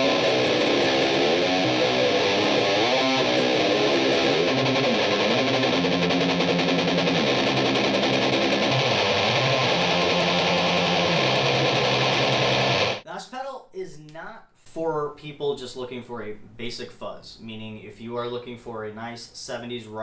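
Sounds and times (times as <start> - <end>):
distorted electric guitar riff: 0.0 - 13.0.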